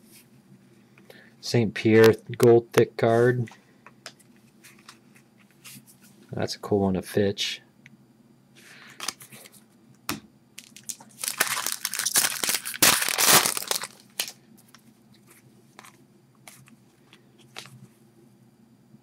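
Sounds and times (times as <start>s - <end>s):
card pack wrapper crinkling: 10.6s - 16.8s.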